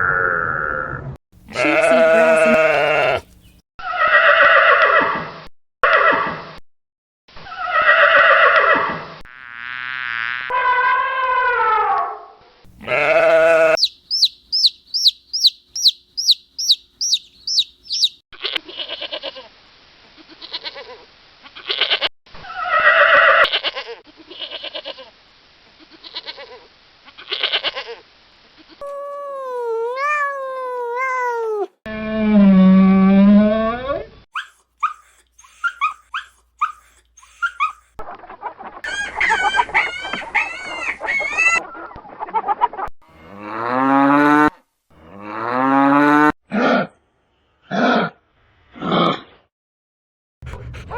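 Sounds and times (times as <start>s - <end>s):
long low animal call: 0.0s - 3.2s, 12.8s - 13.9s
rough animal calls: 1.5s - 3.3s, 12.8s - 18.2s, 34.4s - 38.0s
sliding pitch animal calls: 12.8s - 18.2s
high bird chirps: 13.8s - 18.2s.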